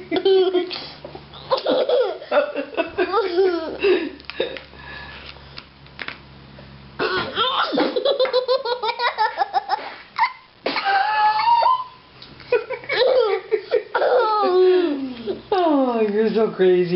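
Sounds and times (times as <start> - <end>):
child belly laughing: 0.0 - 4.6, 7.0 - 15.4.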